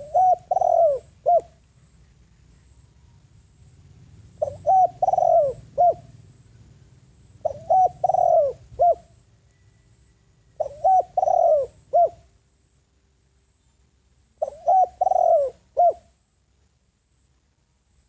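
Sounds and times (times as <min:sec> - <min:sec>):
dove cooing: 0:00.0 - 0:01.6, 0:04.0 - 0:06.2, 0:07.4 - 0:09.2, 0:10.6 - 0:12.3, 0:14.4 - 0:16.2.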